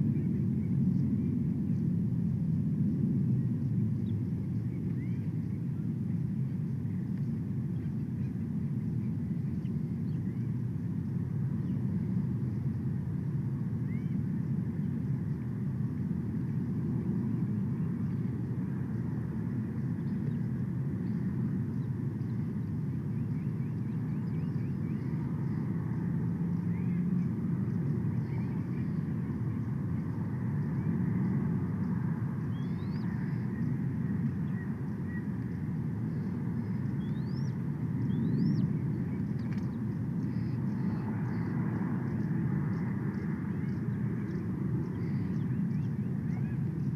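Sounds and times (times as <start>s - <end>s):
steady low rumble: 0.0s - 46.9s
small birds chirping: 17.1s - 46.9s.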